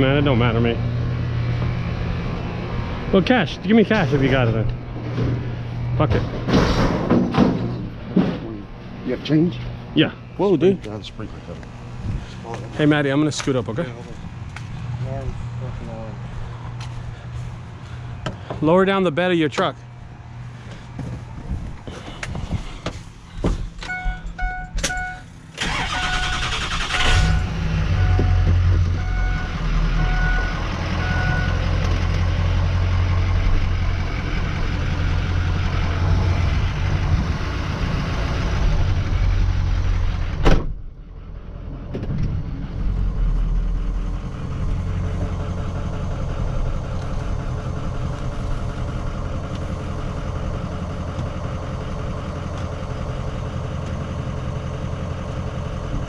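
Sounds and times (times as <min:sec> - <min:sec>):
truck engine cranking and running: 0:20.6 - 0:56.0
dashboard warning chime beeping: 0:23.8 - 0:31.6.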